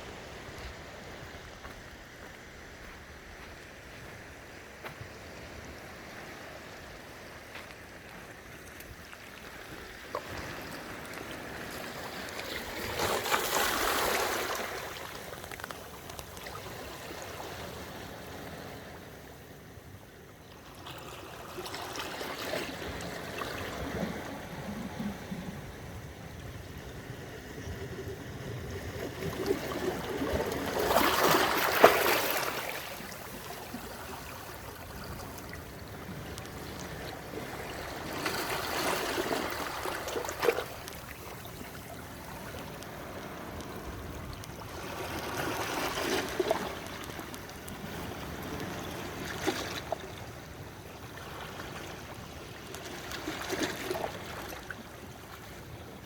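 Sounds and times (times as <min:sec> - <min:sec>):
sea waves breaking on beach: 0:09.4 - 0:19.5, 0:27.4 - 0:56.0.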